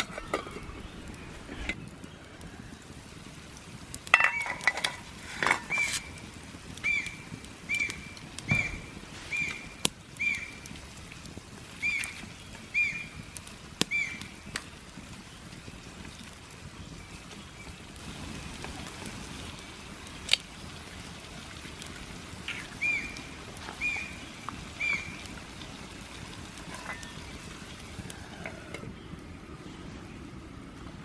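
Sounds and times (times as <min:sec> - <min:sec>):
steady hiss: 0:00.0 - 0:31.0
woodpecker whistled notes: 0:06.8 - 0:10.7, 0:11.8 - 0:13.2, 0:13.9 - 0:14.3
sharp crack: 0:07.8 - 0:12.2.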